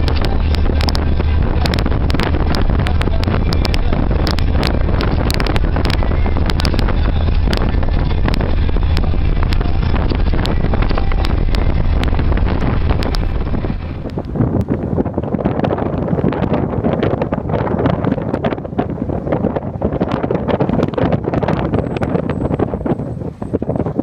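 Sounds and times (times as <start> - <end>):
low engine drone: 0.0 - 24.0
wind noise on microphone: 0.0 - 24.0.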